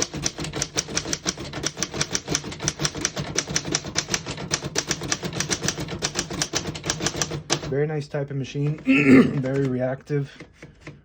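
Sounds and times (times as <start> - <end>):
typewriter keys clacking: 0.0 - 7.7.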